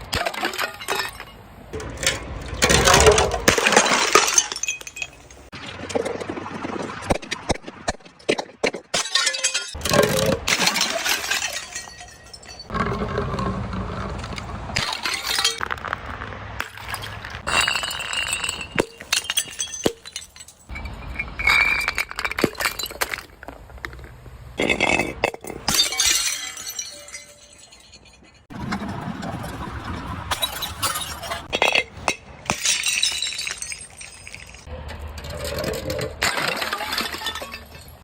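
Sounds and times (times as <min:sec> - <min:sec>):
glass bottles shattering: 0:00.0 - 0:05.6, 0:08.3 - 0:13.4, 0:14.8 - 0:15.8, 0:16.6 - 0:23.6, 0:24.6 - 0:28.5, 0:30.2 - 0:38.0
glass shards tinkling: 0:03.7 - 0:05.5, 0:09.0 - 0:12.7, 0:14.8 - 0:15.6, 0:16.8 - 0:23.3, 0:24.6 - 0:28.5, 0:30.3 - 0:31.9, 0:32.5 - 0:34.7, 0:35.6 - 0:38.0.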